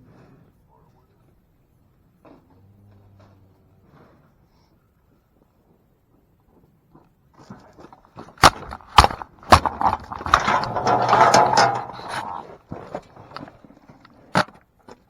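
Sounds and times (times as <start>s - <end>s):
metal knocks and clangs: 8.4s - 12.4s
steel chute rattling and banging: 8.4s - 12.4s.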